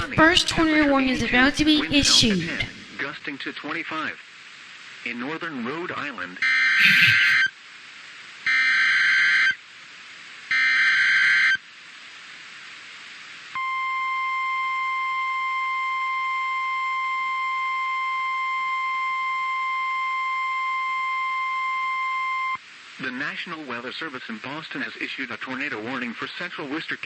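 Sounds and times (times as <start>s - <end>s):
screeching data bursts: 6.8s - 7.5s.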